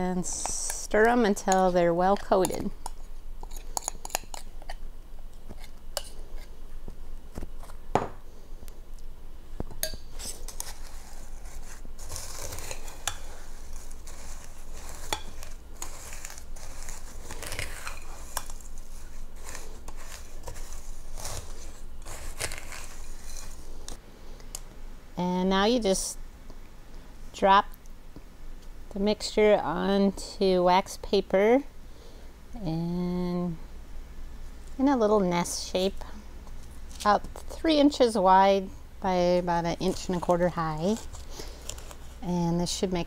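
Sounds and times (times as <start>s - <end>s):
spoon scraping a bowl: 0.4s - 4.8s, 9.8s - 24.0s, 39.8s - 42.2s
crunchy noodles rustling: 10.1s - 24.0s, 39.4s - 42.2s.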